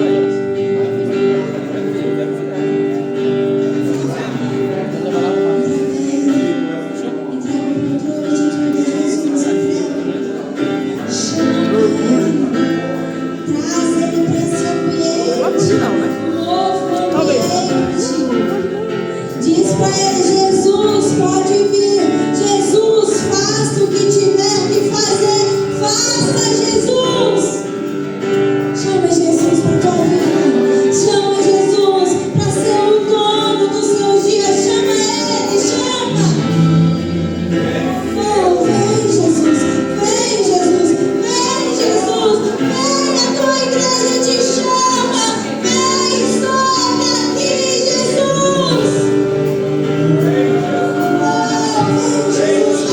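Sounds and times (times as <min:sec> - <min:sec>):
instrumental accompaniment: 0:00.0 - 0:52.9
women singing worship song: 0:28.8 - 0:49.1, 0:50.0 - 0:52.9.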